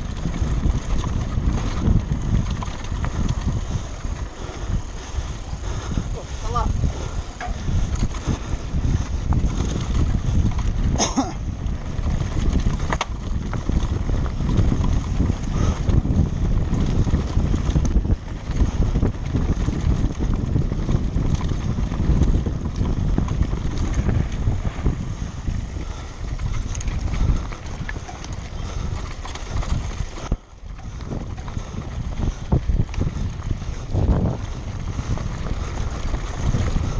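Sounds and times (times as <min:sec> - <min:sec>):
mountain bike rattling: 0:00.0 - 0:36.9
wind over microphone: 0:00.0 - 0:36.9.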